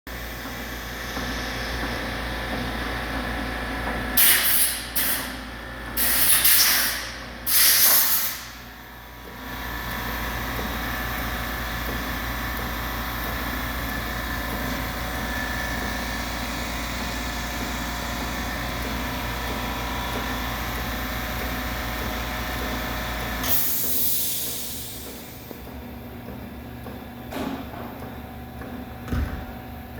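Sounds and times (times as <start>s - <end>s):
loud hissing bursts: 6.0s - 8.5s.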